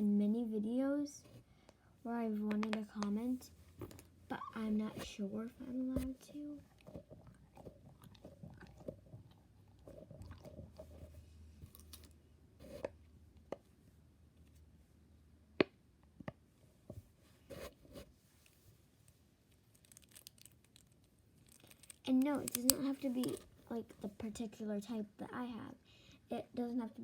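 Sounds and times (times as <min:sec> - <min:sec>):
fidget toys clicking and popping: 0:19.8 - 0:23.5.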